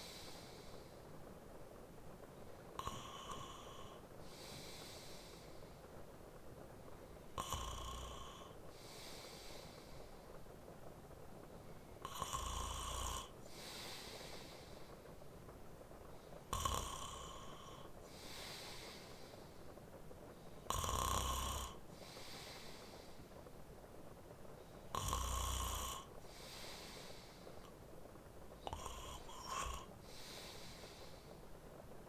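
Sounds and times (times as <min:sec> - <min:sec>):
steady rain: 0:00.0 - 0:32.0
man snoring: 0:02.8 - 0:04.0, 0:07.4 - 0:08.6, 0:12.1 - 0:14.4, 0:16.5 - 0:18.8, 0:20.7 - 0:21.8, 0:24.9 - 0:26.1, 0:28.6 - 0:31.1.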